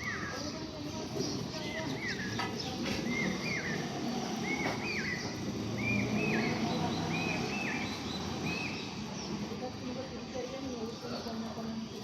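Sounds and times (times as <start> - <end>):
bird calling: 0.0 - 9.1.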